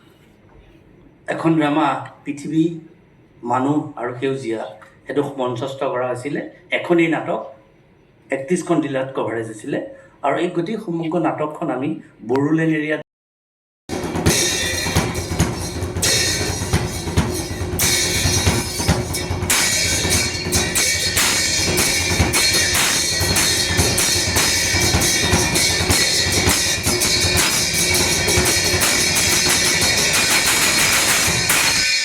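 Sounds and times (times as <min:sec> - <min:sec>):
drum kit driving beat: 0:13.9 - 0:32.0.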